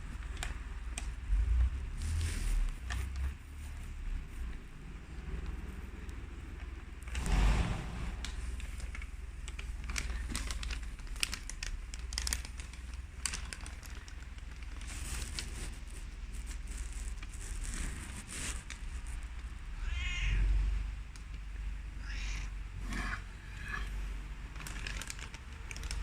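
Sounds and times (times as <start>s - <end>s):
rustling and crackling: 0.0s - 26.0s
low rumble: 4.8s - 10.1s
kitten meowing: 19.8s - 20.6s, 21.9s - 23.9s.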